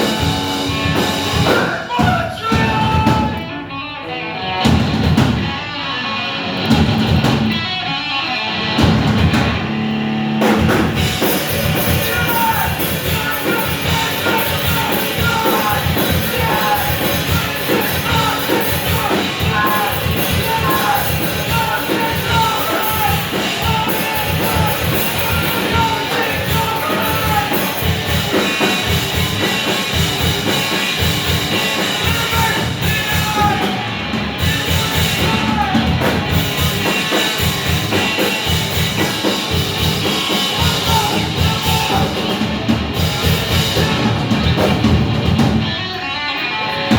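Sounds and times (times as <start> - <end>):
drum kit beat: 0.0 - 3.5, 4.5 - 5.6, 8.6 - 45.9
electric guitar: 0.0 - 46.9
person singing: 11.2 - 29.2, 31.5 - 37.8, 39.8 - 42.4, 43.0 - 44.5.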